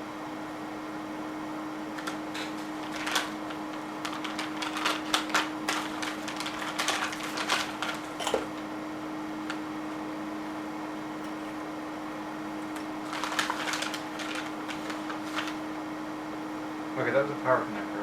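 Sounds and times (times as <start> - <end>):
steady low hum: 0.0 - 18.0
packaging clicks and crinkles: 2.0 - 8.6, 12.6 - 15.6.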